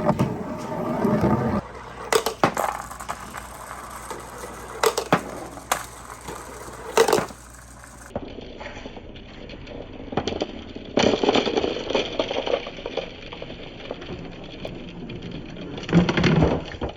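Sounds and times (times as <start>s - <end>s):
balls clacking on track: 0.0s - 8.2s
balls rolling rumble: 0.0s - 16.9s.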